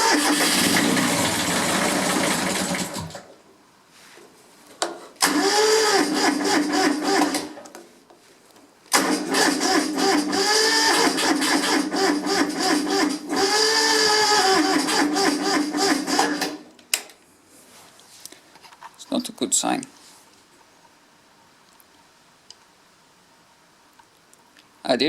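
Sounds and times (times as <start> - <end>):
engine starter whining: 0.0 - 3.3, 5.2 - 7.6, 8.9 - 16.6.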